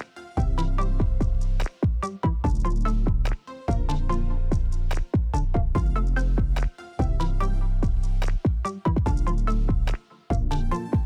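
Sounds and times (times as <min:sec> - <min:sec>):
music with deep drum beat: 0:00.4 - 0:11.0.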